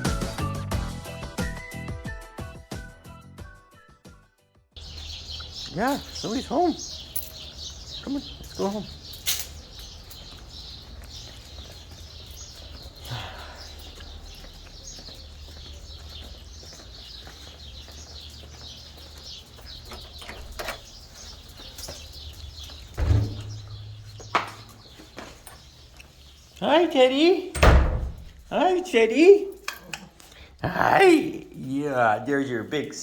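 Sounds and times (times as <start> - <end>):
small birds chirping: 4.8 - 33.0
loud thump: 23.0 - 24.7.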